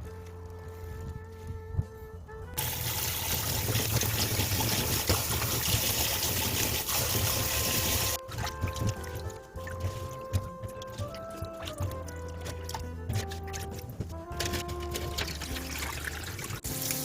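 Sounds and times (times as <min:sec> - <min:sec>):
tap water running: 0:02.6 - 0:17.0.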